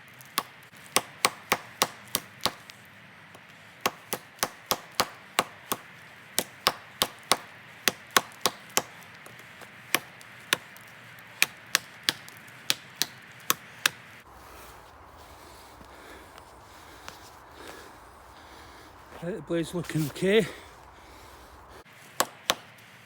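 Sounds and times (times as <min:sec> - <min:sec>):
knife chopping into wood: 0:00.4 - 0:02.7, 0:03.8 - 0:10.7, 0:11.4 - 0:14.0, 0:22.2 - 0:22.8.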